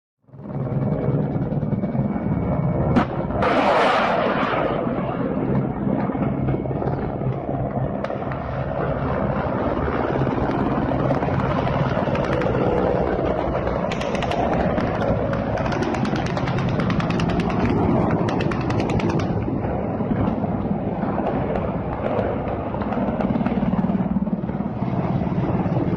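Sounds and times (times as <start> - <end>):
helicopters flying over: 0.2 - 25.9
rapid rotor chop: 13.9 - 19.4.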